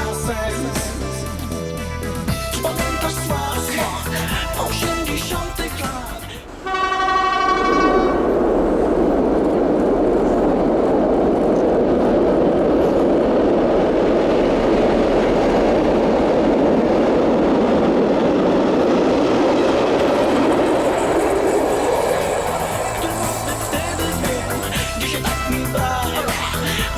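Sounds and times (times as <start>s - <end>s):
train rumbling past: 0.0s - 26.9s
locomotive horn blast: 6.3s - 9.3s, 20.0s - 26.9s.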